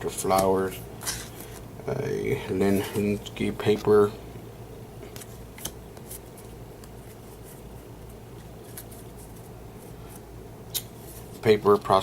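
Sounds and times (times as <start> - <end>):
cards rustling and ticking: 0.1 - 1.7, 5.0 - 12.0.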